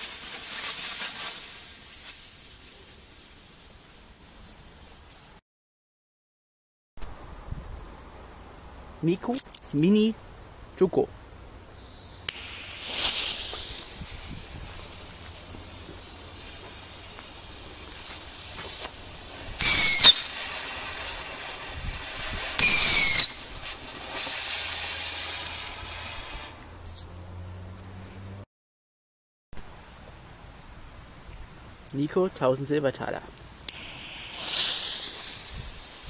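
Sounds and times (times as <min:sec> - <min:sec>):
firework whistles: 0:00.0 - 0:03.4, 0:11.8 - 0:26.6, 0:33.4 - 0:36.0
firework hissing: 0:00.0 - 0:05.4, 0:11.8 - 0:27.0, 0:33.4 - 0:36.0.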